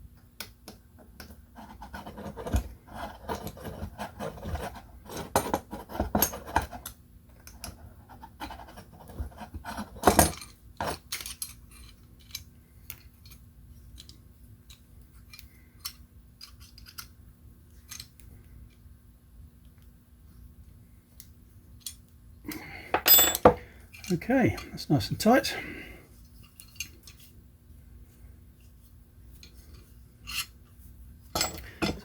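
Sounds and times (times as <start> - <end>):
small parts scraping and clicking: 1.2 - 18.9, 20.6 - 22.1, 22.9 - 24.8, 26.2 - 27.4, 29.3 - 32.0.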